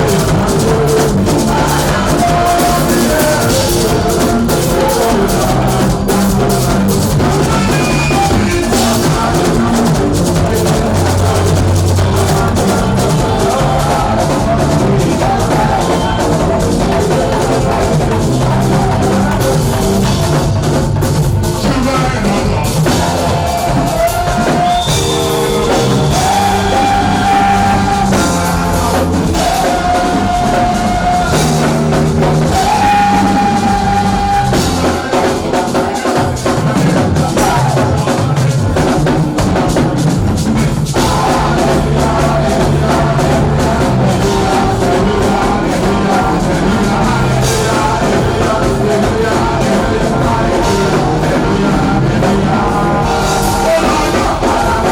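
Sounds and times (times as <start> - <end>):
live church music: 0.0 - 54.9
long held sung notes: 22.9 - 36.1.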